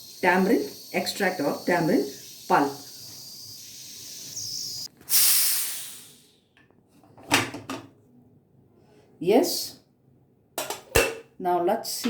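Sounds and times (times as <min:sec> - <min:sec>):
pressure cooker steam hiss: 0:00.0 - 0:06.4.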